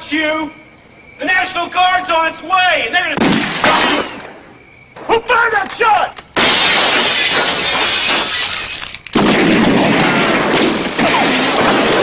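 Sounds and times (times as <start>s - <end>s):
heavy gunfire: 3.2s - 4.2s, 9.2s - 12.0s
glass shattering: 6.4s - 12.0s.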